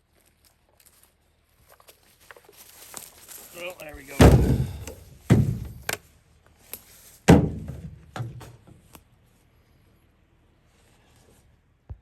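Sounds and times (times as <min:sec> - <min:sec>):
heavy wooden thunks: 0:04.1 - 0:06.0, 0:07.3 - 0:08.6.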